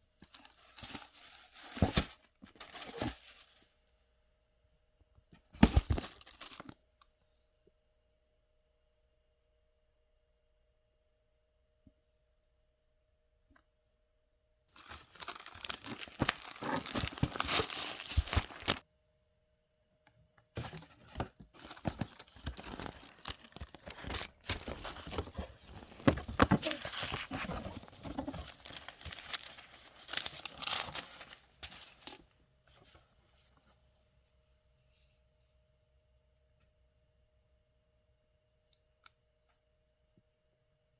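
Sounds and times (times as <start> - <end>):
packaging tearing and crinkling: 14.8 - 18.8, 21.1 - 31.3.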